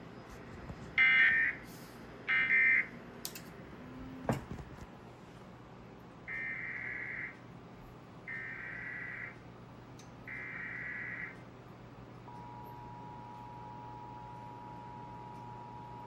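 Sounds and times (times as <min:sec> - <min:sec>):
steady dual tone attention signal: 0:10.3 - 0:16.0.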